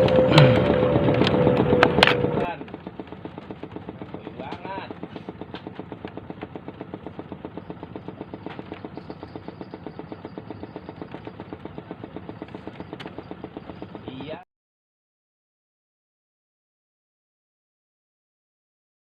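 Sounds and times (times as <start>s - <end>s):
small engine running: 0.0s - 14.4s.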